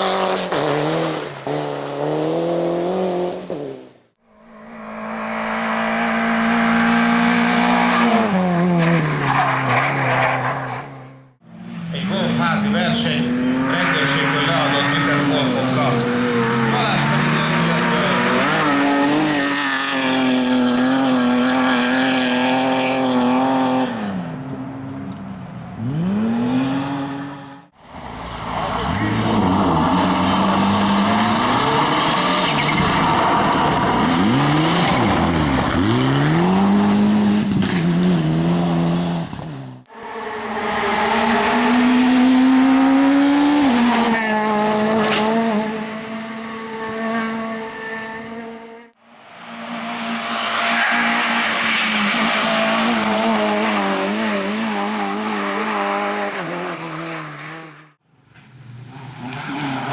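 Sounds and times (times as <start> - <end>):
race car engines revving: 0.0 - 59.9.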